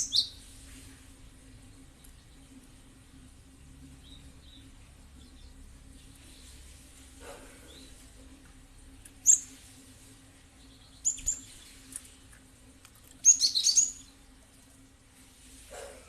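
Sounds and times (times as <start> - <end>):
bird calling: 0.0 - 0.4, 13.2 - 14.1.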